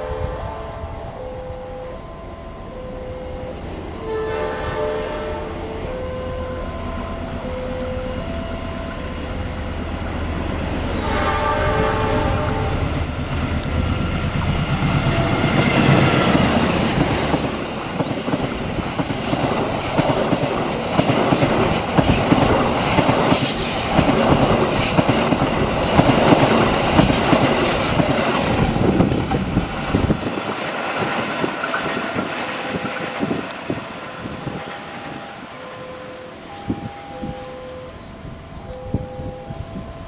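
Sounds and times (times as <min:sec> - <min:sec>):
train horn: 0:00.0 - 0:09.5, 0:10.7 - 0:13.1, 0:31.4 - 0:40.0
locomotive rumbling past: 0:00.0 - 0:40.0
train wheels clattering: 0:10.6 - 0:37.6
high wheel squeal: 0:18.9 - 0:34.6.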